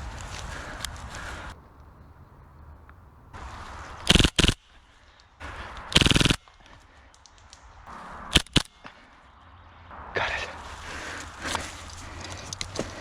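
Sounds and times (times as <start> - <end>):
airsoft gun firing bursts: 4.0 - 4.8, 5.9 - 6.6, 8.3 - 8.8.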